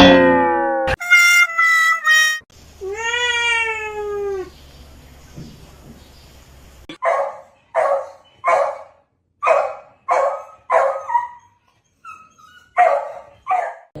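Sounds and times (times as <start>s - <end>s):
dog barking: 7.0s - 11.6s, 12.8s - 14.0s.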